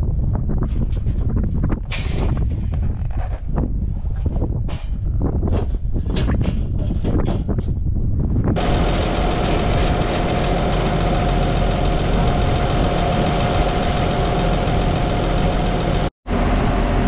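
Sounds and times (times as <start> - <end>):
bulldozer diesel engine running: 8.6 - 17.0
steady whine: 8.6 - 17.0.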